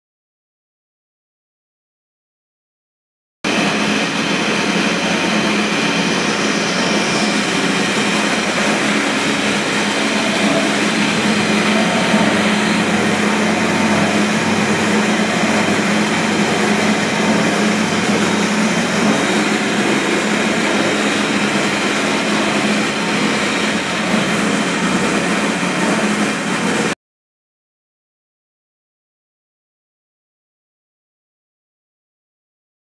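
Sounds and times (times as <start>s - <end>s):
cooking machine humming: 3.5s - 26.9s.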